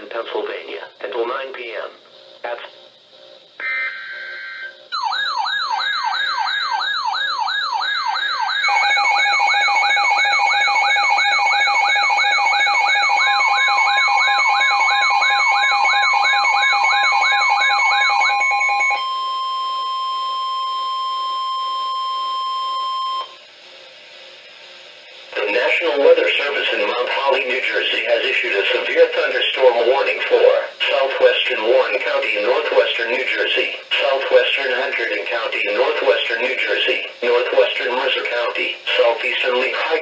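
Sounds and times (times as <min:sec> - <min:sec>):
warbling siren-like alert: 0:03.6 - 0:23.3
steady single-pitch alarm tone: 0:03.6 - 0:23.4.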